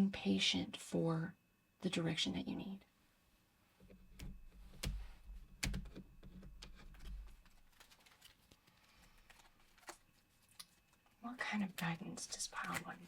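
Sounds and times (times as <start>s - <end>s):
cards clicking and knocking: 3.8s - 10.8s, 11.8s - 13.0s
cards rustling and tapping: 3.8s - 13.0s.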